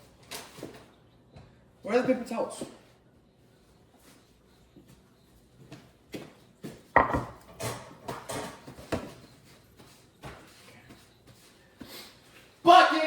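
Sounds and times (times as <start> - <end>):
kitchen items knocking and clattering: 7.0 - 9.2.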